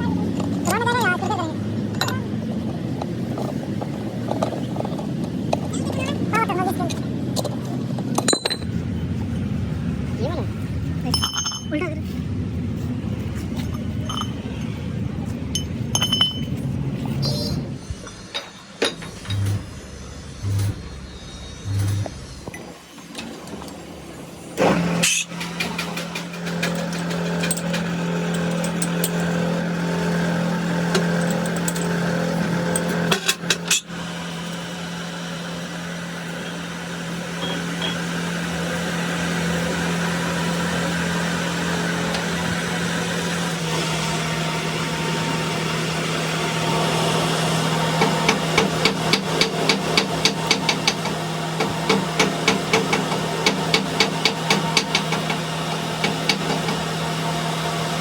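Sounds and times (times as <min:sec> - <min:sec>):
engine humming: 0:00.0 - 0:58.0.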